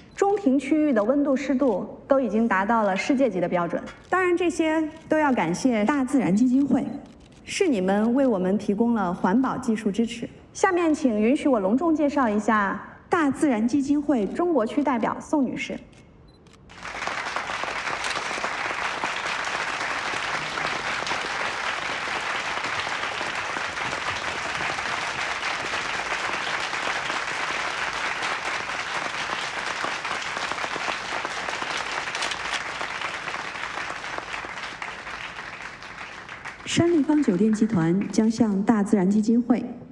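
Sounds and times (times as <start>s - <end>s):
audience applauding: 16.7s - 37.2s.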